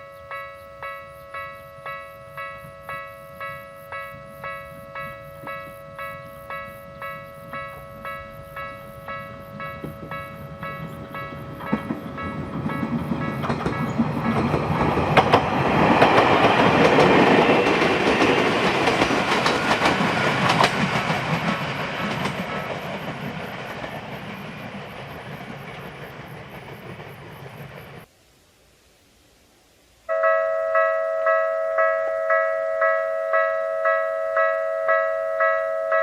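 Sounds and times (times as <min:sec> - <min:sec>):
electric train passing: 0:00.0 - 0:28.1, 0:30.1 - 0:36.0
wheels clattering over rail joints: 0:09.8 - 0:28.1.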